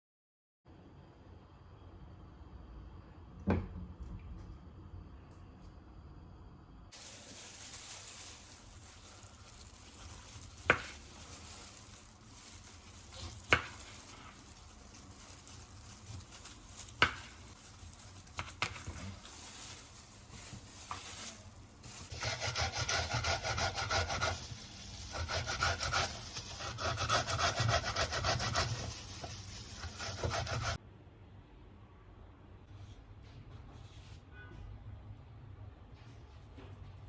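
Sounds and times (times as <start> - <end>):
beet grating on a grater: 21.9 - 30.8.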